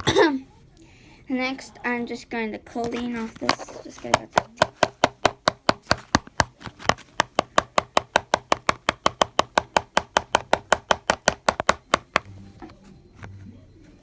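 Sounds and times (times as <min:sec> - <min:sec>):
utensil tapping bowl edge: 0:03.2 - 0:12.3.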